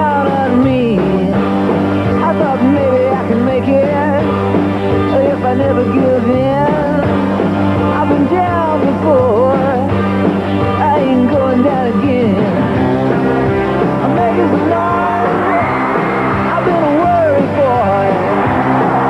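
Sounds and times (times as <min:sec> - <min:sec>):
person singing: 0:00.0 - 0:01.5, 0:02.2 - 0:04.4, 0:05.1 - 0:07.2, 0:07.8 - 0:10.0, 0:10.8 - 0:12.8, 0:14.0 - 0:19.0
rock band playing: 0:00.0 - 0:19.0.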